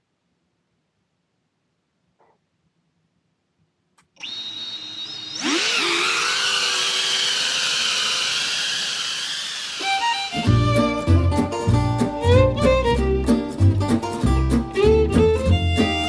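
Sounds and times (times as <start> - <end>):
drone motors whining: 4.2 - 10.9.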